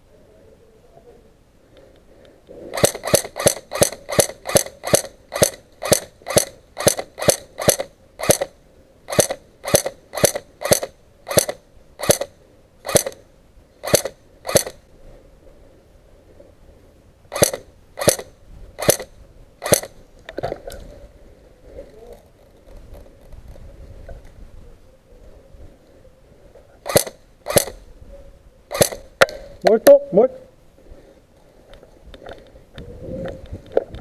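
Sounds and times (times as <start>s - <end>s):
airsoft gun firing shots: 2.7s - 13.2s, 13.8s - 14.8s, 17.3s - 20.0s, 26.8s - 27.8s, 28.7s - 29.5s.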